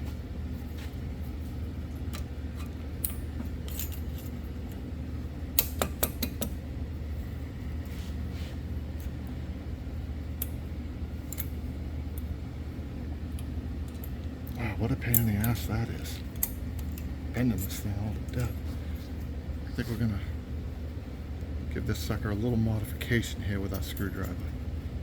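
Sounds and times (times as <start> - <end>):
steady low hum: 0.0 - 25.0
metal brake clips clicking: 5.6 - 6.6.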